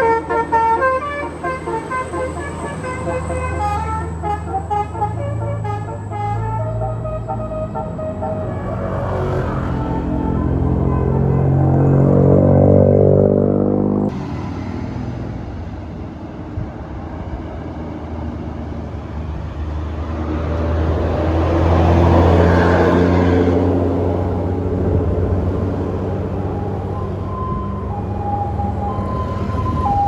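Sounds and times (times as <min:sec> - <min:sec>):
multi-tone bus horn: 0:00.0 - 0:14.1, 0:20.3 - 0:30.0
bus engine rumbling: 0:00.0 - 0:30.0.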